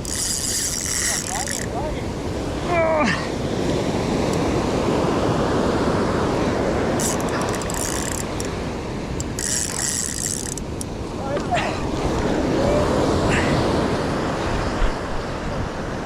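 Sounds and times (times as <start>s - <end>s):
surf washing on shore: 0.0s - 16.0s.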